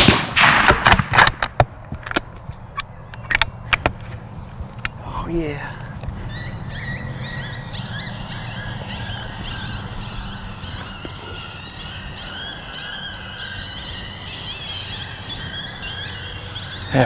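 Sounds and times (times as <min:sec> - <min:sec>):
electronic coyote pup whines: 0:06.3 - 0:17.0.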